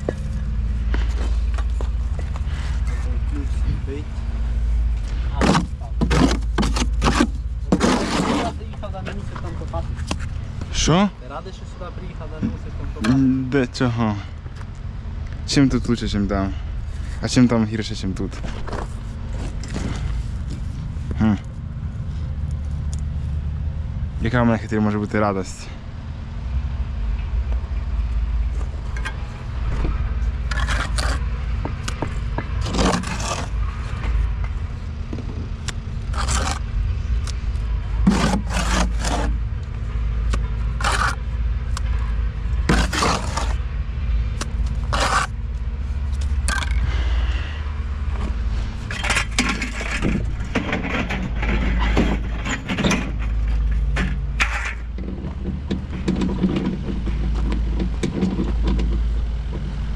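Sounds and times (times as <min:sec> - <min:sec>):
low rumble: 0:00.0 - 0:59.9
short scraping strokes: 0:05.2 - 0:08.6, 0:32.6 - 0:34.0, 0:36.0 - 0:36.6, 0:38.0 - 0:39.4, 0:40.4 - 0:41.3, 0:42.6 - 0:43.6, 0:44.7 - 0:45.4.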